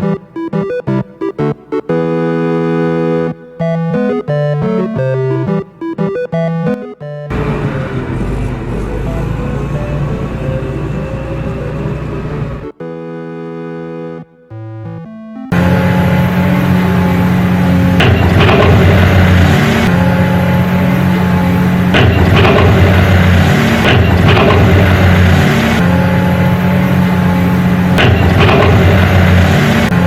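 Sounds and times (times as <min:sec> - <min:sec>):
heavy truck engine revving: 0:07.3 - 0:13.3, 0:15.5 - 0:30.0.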